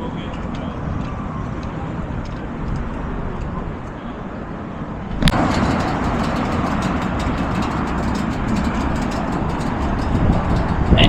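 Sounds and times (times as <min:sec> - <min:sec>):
motorcycle engine running: 0:05.3 - 0:11.0.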